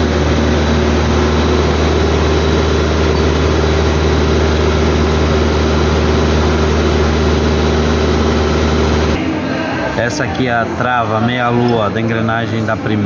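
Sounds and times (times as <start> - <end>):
low droning hum: 0.0 - 9.2.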